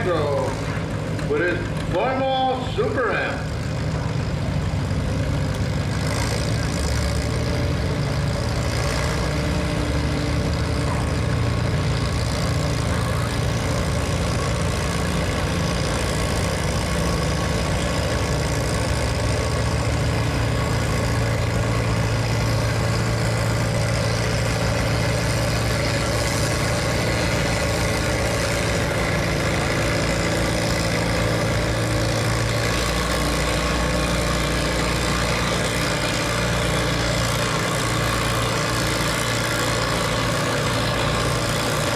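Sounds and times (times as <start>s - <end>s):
tractor engine under load: 0.0s - 41.9s.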